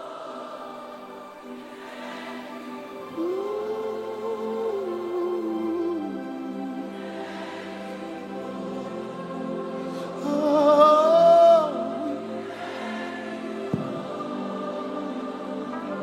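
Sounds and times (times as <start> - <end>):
soft knock: 13.7 - 14.0.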